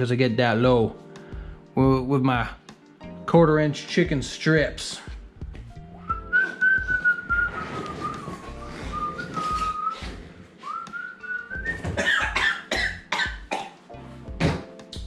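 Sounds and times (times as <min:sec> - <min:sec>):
person whistling: 0:06.0 - 0:12.0.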